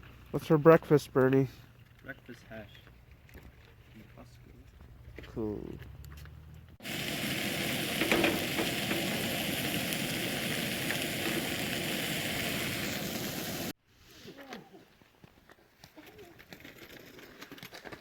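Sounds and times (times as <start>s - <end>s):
food sizzling in a frying pan: 6.8s - 13.7s.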